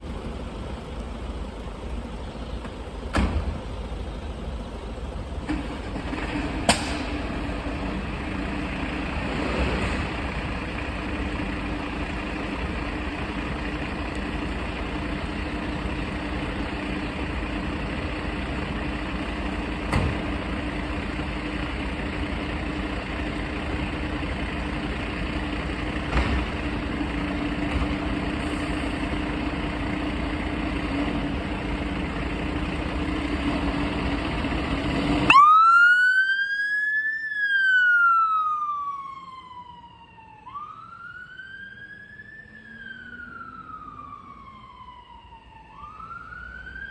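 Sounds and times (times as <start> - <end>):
diesel engine running: 0.0 - 35.7.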